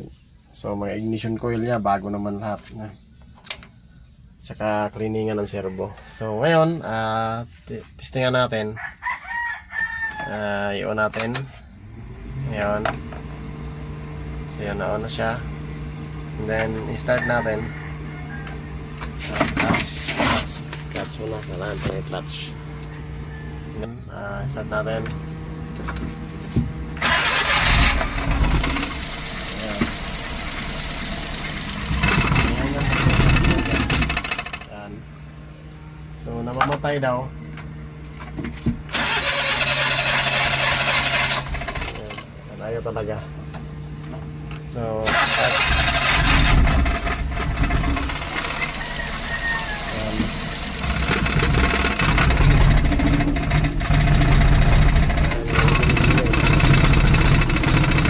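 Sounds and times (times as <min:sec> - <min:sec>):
truck engine cranking and running: 0:14.4 - 0:23.0, 0:25.0 - 0:34.9, 0:37.5 - 0:58.0.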